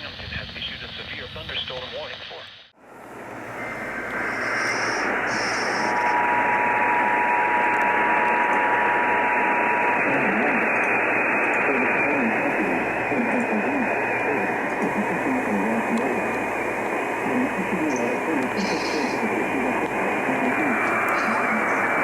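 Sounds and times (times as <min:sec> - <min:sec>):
heavy radio static: 0:00.0 - 0:02.6, 0:03.4 - 0:22.0
faint wavering sound: 0:02.8 - 0:22.0
steady tone: 0:02.8 - 0:22.0.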